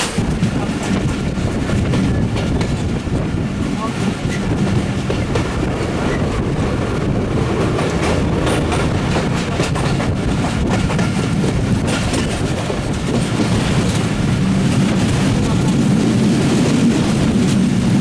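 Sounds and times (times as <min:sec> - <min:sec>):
train carriage rumble: 0:00.0 - 0:18.0
wheels clicking over rails: 0:03.8 - 0:17.8.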